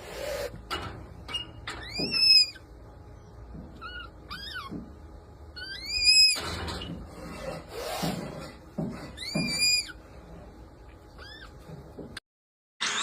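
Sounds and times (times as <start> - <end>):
red panda squeaks and squeals: 3.8 - 4.8, 5.6 - 6.4, 9.2 - 10.0, 11.2 - 11.6.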